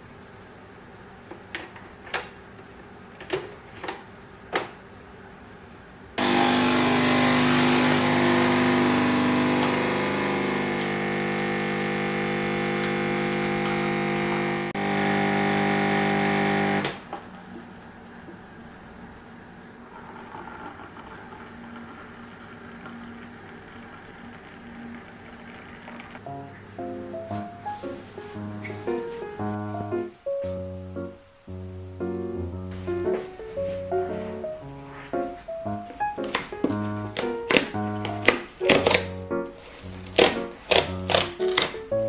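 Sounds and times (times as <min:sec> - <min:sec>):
small electric motor whirring: 0:06.2 - 0:16.9.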